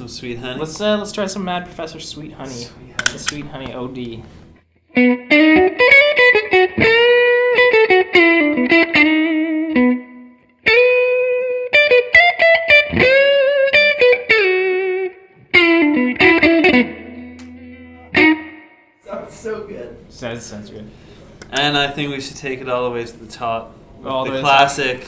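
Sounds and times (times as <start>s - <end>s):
overdriven electric guitar blues lead: 4.8s - 18.8s.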